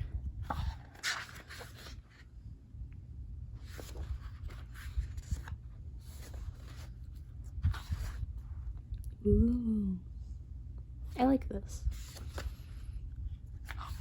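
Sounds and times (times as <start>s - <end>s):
pages turning: 0.4s - 2.3s, 3.6s - 8.4s, 11.9s - 12.8s, 13.5s - 14.0s.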